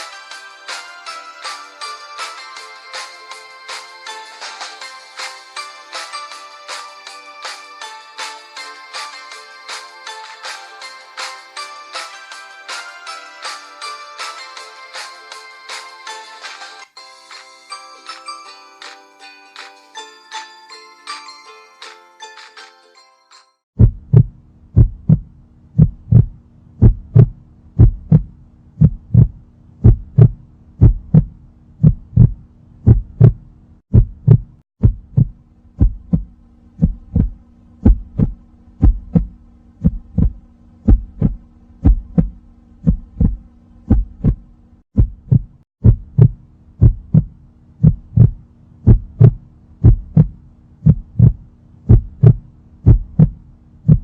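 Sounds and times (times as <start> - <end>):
heartbeat-like double thumps: 23.8 - 54.0
low steady hum: 23.8 - 54.0.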